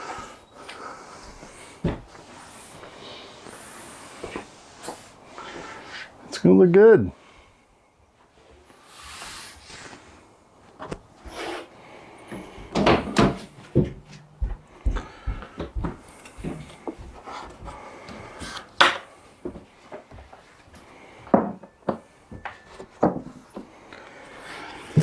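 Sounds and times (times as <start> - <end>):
cover clunking on metal rails: 12.7 - 14.2.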